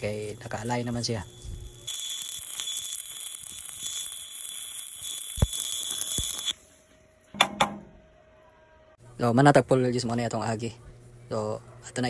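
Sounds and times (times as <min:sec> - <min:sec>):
arc welding crackling hiss: 0:00.0 - 0:06.8.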